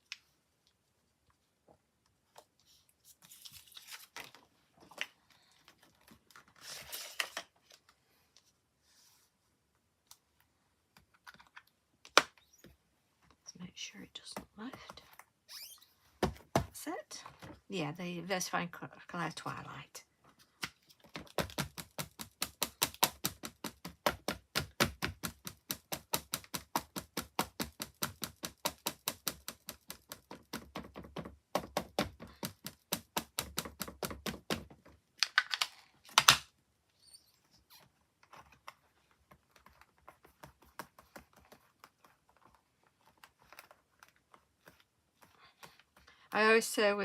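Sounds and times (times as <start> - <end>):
ink pad tapping rubber stamp: 21.1 - 34.6.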